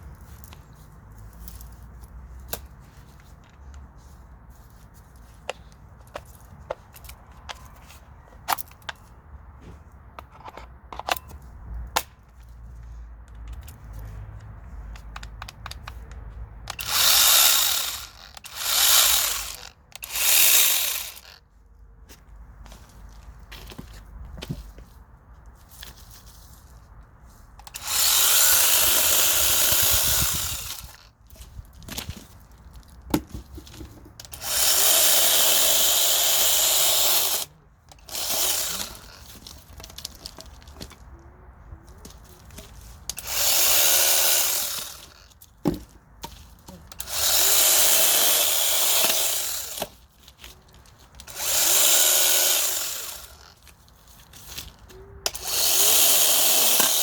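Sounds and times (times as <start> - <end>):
chainsaw cutting wood: 16.7 - 21.4, 27.7 - 31.0, 34.3 - 39.4, 43.1 - 45.8, 46.9 - 50.0, 51.2 - 53.6, 55.3 - 57.0.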